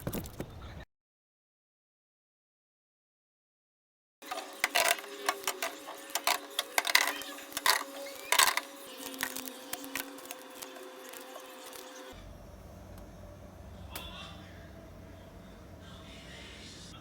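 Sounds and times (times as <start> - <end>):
items clicking and knocking on shelves: 4.2 - 11.9
faint steady hum: 4.7 - 17.0.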